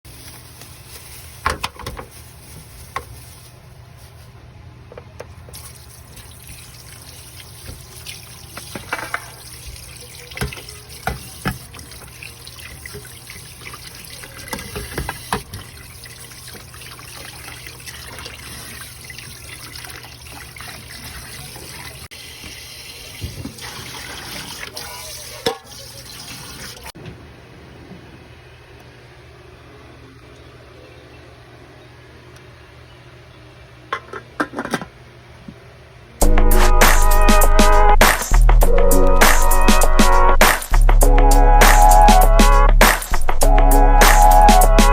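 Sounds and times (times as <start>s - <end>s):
tap water running into sink: 5.5s - 27.0s
kitchenware clattering: 8.5s - 9.5s.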